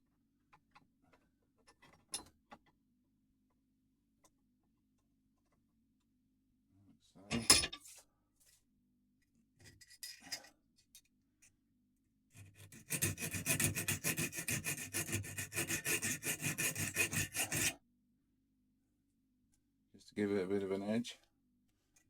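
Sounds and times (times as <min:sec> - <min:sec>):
hand file rasping on steel: 0:12.4 - 0:17.8.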